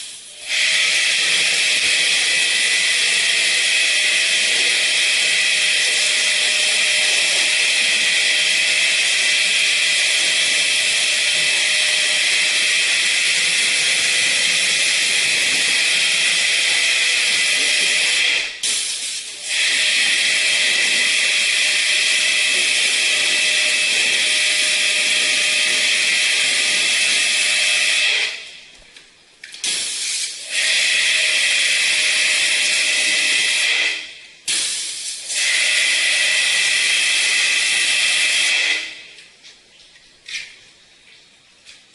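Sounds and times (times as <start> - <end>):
spray nozzle hissing: 17.4 - 20.0, 29.6 - 30.4, 34.5 - 35.3.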